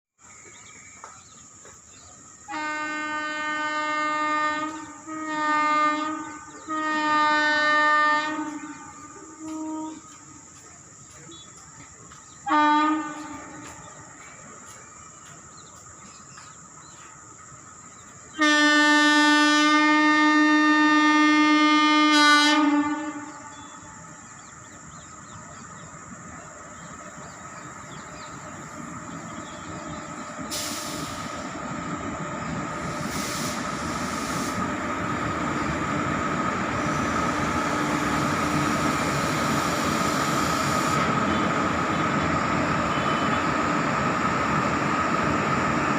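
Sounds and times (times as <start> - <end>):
train wheels rumbling on rails: 0.2 - 19.8, 21.2 - 45.9
electric locomotive horn blast: 2.5 - 10.3, 12.5 - 13.8, 18.4 - 24.1, 32.7 - 44.4.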